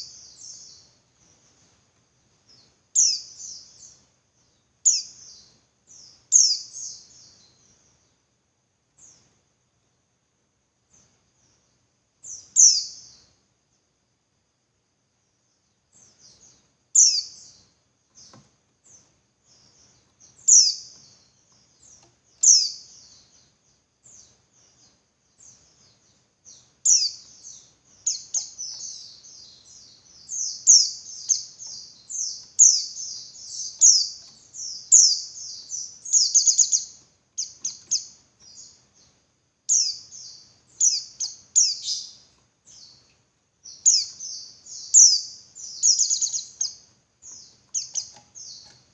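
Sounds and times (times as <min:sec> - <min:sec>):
bird high sharp chirps: 0:28.0 - 0:38.8, 0:43.7 - 0:48.8.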